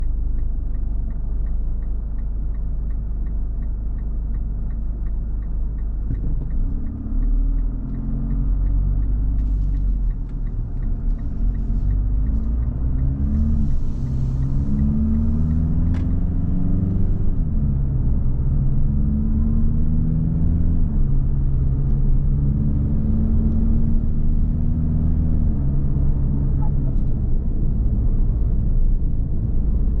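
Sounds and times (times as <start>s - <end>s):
steady ticking: 0.0s - 15.9s
diesel engine accelerating: 0.0s - 30.0s.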